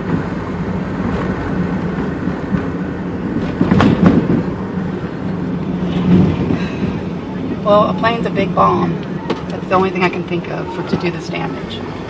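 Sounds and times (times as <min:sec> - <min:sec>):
wind on microphone: 0:00.0 - 0:09.3.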